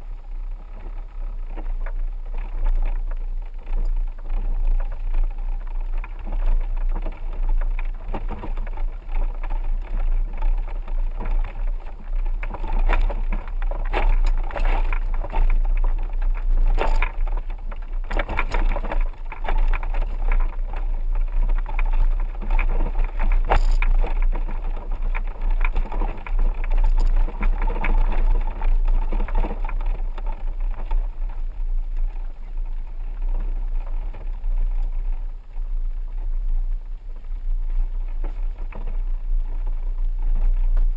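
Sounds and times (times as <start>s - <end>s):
vehicle engine and tyres rumbling: 0.0s - 40.9s
vehicle knocks and rattles: 0.7s - 32.9s.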